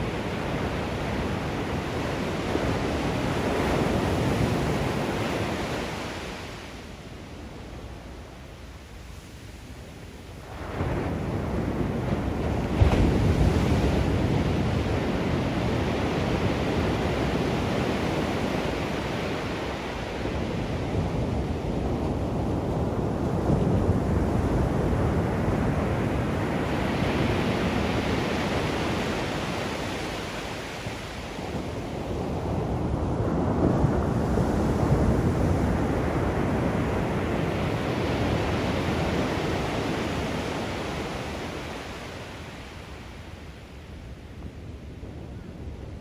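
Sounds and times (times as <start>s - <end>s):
ocean surf breaking on shore: 0.0s - 46.0s.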